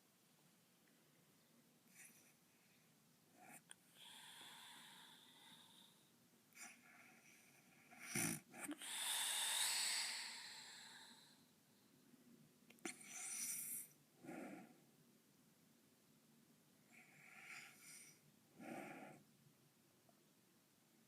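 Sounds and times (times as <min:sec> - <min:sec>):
woman snoring: 0:08.0 - 0:11.3.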